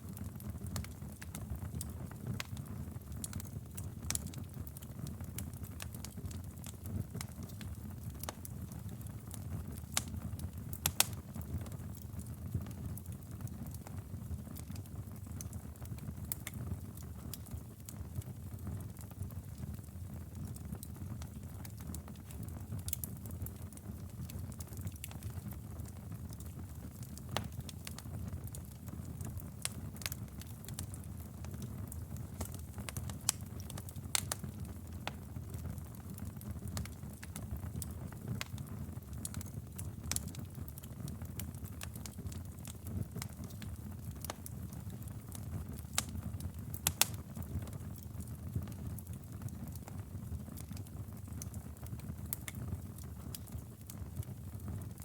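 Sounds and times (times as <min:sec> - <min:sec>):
fire crackling and popping: 0:00.0 - 0:55.0
fire flames rumbling: 0:28.9 - 0:55.0.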